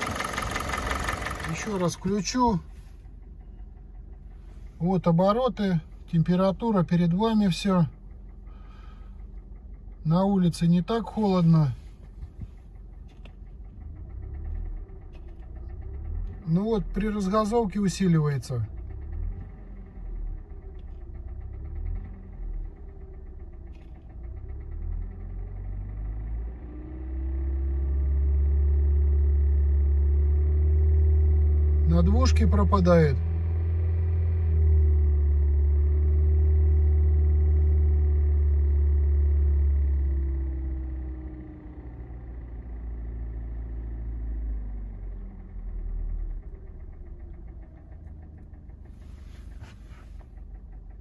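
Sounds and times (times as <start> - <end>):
car engine with metallic knock: 0.0 - 4.4, 11.8 - 16.4, 18.8 - 27.0, 45.1 - 51.0
car engine idling: 0.0 - 51.0
engine knock: 0.0 - 51.0.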